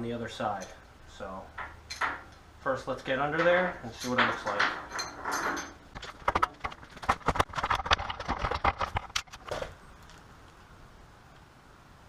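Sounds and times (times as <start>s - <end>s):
hard objects clattering: 3.4s - 9.8s.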